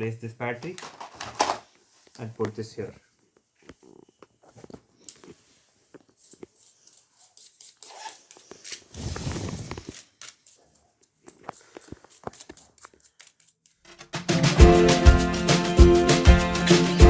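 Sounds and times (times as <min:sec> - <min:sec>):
rustle or scrape: 0:03.8 - 0:13.8.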